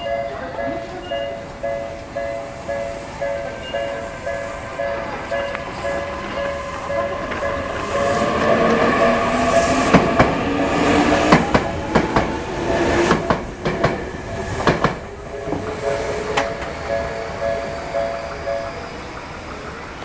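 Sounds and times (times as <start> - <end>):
crossing warning bell: 0.0 - 13.8, 15.0 - 20.0
train wheels clacking on rail joints: 0.7 - 20.0
train motor whine: 3.6 - 19.5.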